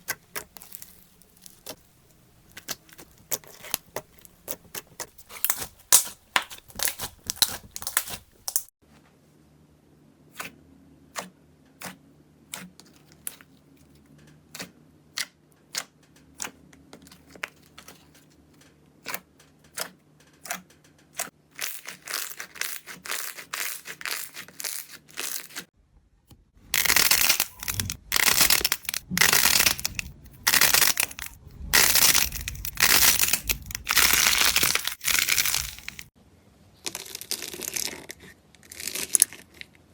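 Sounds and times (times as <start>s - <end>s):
crunching squeezes: 0.0s - 8.7s, 21.5s - 25.6s, 26.7s - 36.1s.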